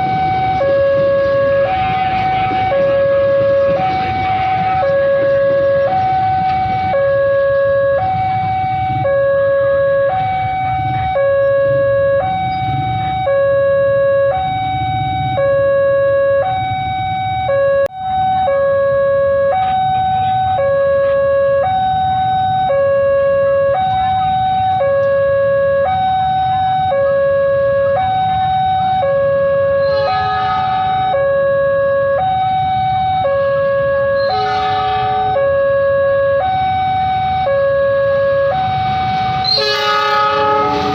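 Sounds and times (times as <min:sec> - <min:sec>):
two-tone level crossing alarm: 0:00.0 - 0:40.9.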